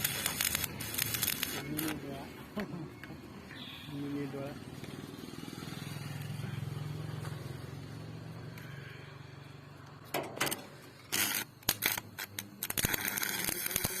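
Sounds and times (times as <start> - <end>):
welding arc crackling sizzle: 0.0 - 2.7, 10.9 - 14.0
welding arc sputters: 0.0 - 2.7, 10.2 - 14.0.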